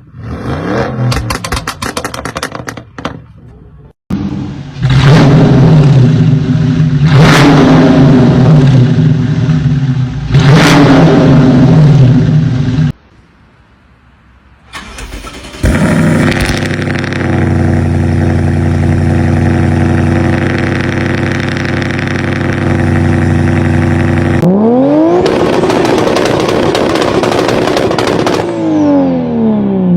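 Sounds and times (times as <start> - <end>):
car engine revving: 4.1 - 12.8, 14.8 - 29.9.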